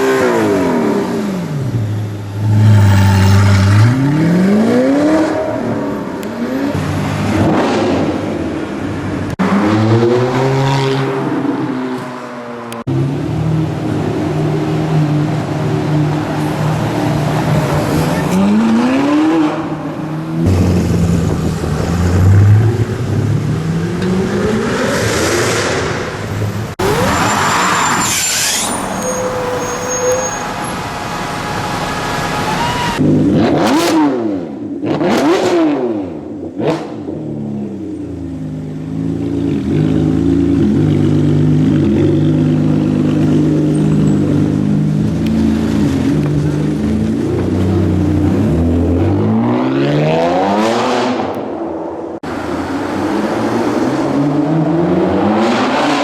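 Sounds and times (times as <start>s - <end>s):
car engines accelerating: 0.0s - 56.0s
engine revving: 2.2s - 8.2s.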